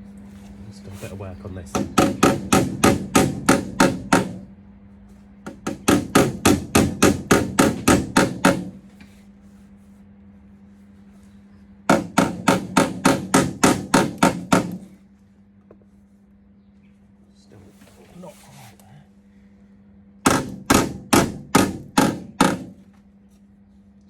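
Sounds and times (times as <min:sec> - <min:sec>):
hammer beating steel panel: 0:01.7 - 0:04.5, 0:05.5 - 0:08.8, 0:11.9 - 0:15.0, 0:20.2 - 0:22.8.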